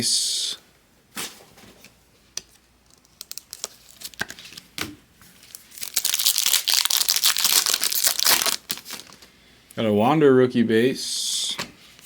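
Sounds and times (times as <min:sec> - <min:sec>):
foil wrapper tearing and crinkling: 0:02.9 - 0:04.3, 0:05.5 - 0:09.3.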